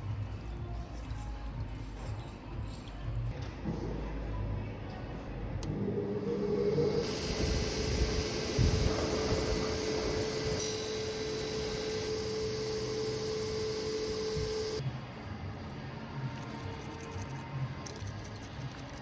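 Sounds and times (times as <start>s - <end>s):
power tool whining: 6.2s - 14.8s.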